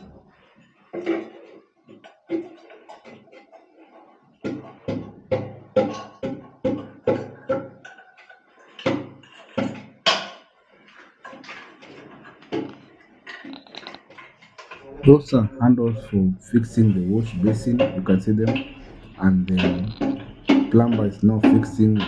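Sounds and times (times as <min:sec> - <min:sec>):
hammer blows: 0:14.8 - 0:22.0.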